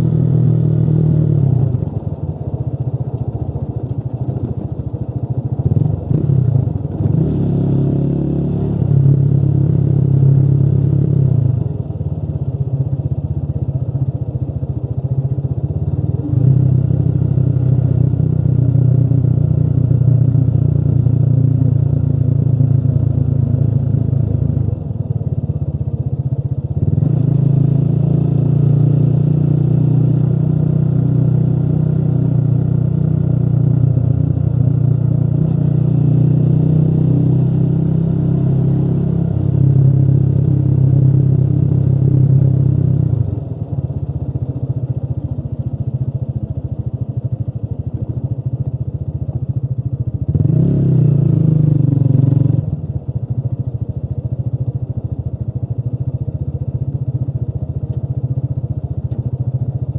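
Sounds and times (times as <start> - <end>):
motorcycle engine revving: 0.0 - 2.0, 5.6 - 11.7, 26.8 - 43.5, 50.2 - 53.1.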